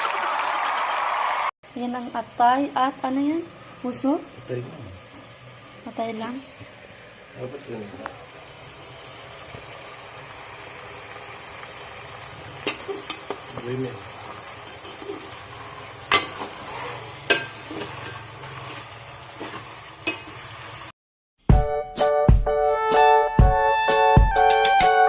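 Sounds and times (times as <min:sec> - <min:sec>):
food sizzling in a pan: 0:01.7 - 0:21.0
music: 0:21.4 - 0:25.0.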